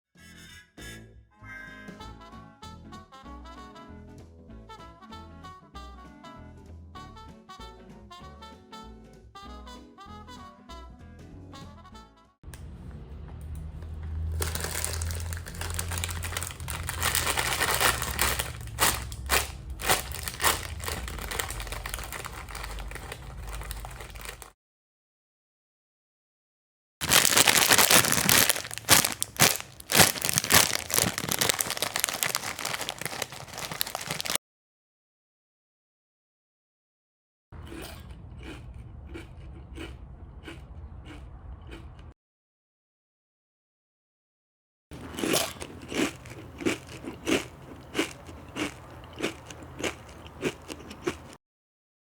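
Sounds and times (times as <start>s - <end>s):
crisp crunches: 14.4s - 24.5s, 27.0s - 34.4s, 45.0s - 51.4s
dense crinkling and crackling: 14.4s - 24.5s, 27.0s - 34.4s, 45.0s - 51.4s.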